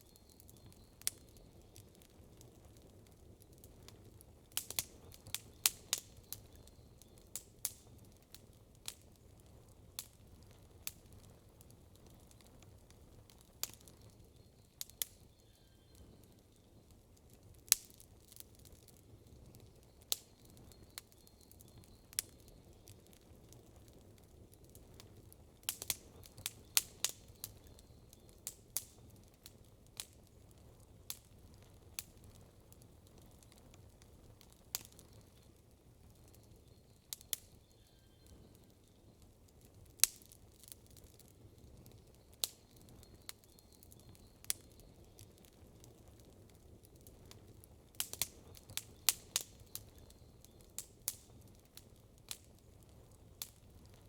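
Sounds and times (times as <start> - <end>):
campfire crackling: 0.0 - 54.0.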